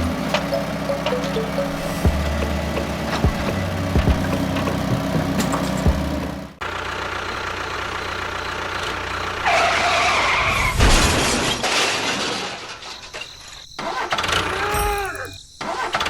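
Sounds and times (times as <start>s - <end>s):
motor running steadily: 0.0s - 6.6s
harsh screeching: 9.4s - 11.7s, 13.8s - 16.0s.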